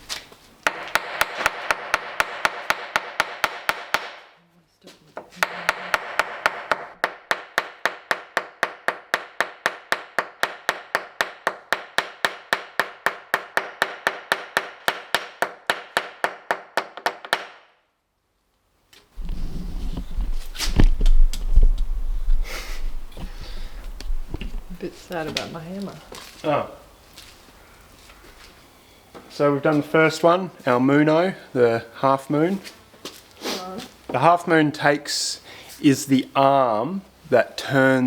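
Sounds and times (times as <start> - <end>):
hammer striking metal: 0.7 - 4.3, 5.4 - 17.6.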